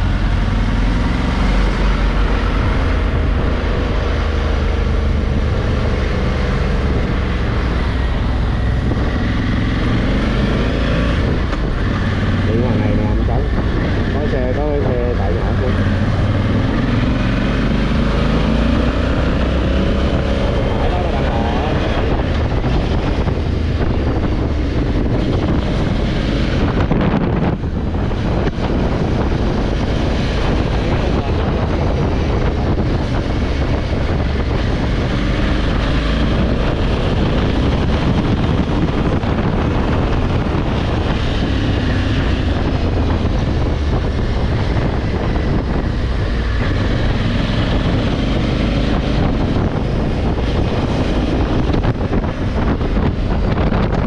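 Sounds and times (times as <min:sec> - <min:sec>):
wind rushing over microphone: 0:00.0 - 0:54.0.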